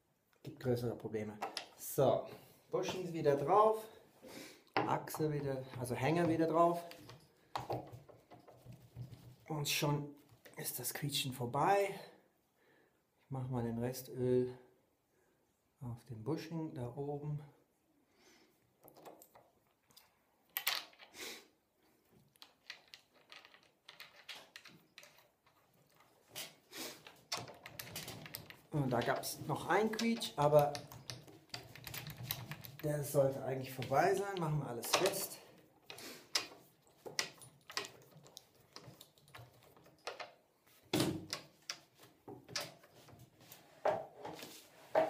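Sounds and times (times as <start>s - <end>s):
parts clicking and tapping: 1.4s - 1.8s, 4.7s - 9.4s, 22.2s - 43.2s.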